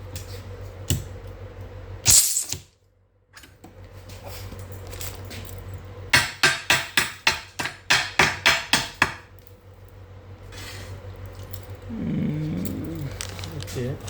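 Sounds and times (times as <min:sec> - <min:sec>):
hammer strikes on steel: 0:06.2 - 0:09.2.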